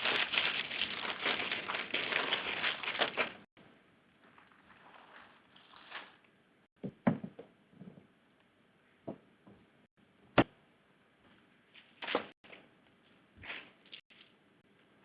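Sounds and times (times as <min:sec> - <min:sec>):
knocks and clunks: 0:06.8 - 0:08.1.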